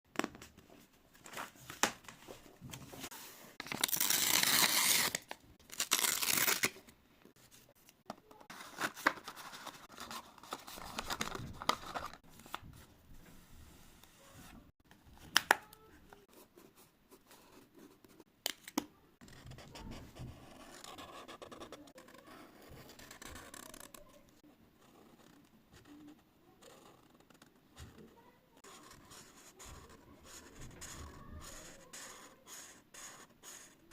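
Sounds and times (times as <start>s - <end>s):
paper tearing: 3.6s - 6.8s.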